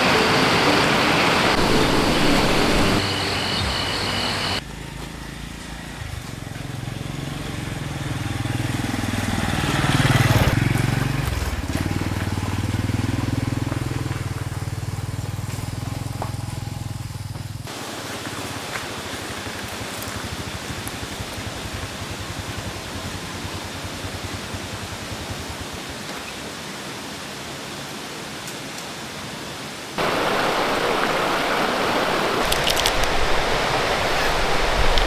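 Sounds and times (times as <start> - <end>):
vehicle engine passing by: 0.0 - 17.4.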